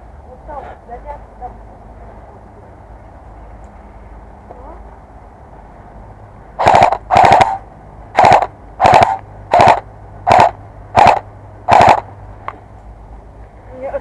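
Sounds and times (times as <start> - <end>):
airsoft rifle firing bursts: 6.6 - 7.6, 8.2 - 12.0.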